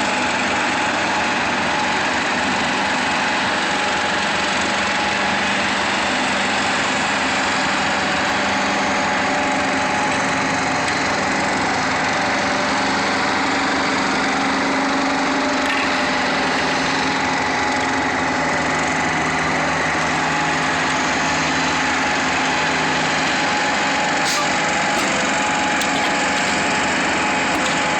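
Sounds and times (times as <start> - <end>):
paving machine engine running: 14.0 - 27.9.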